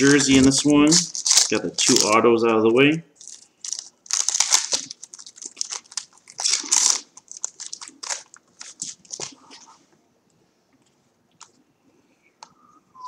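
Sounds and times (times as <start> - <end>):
wrapper crinkling and tearing: 0.0 - 2.4, 3.2 - 9.4.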